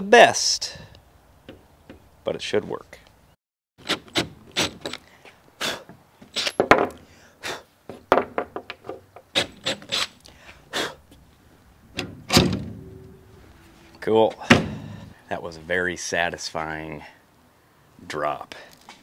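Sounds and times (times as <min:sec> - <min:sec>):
hand tool scraping metal: 0:09.3 - 0:10.2.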